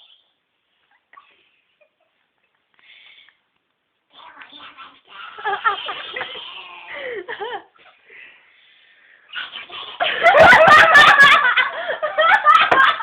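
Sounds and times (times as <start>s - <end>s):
girls laughing loudly: 5.4s - 7.9s, 10.0s - 13.0s.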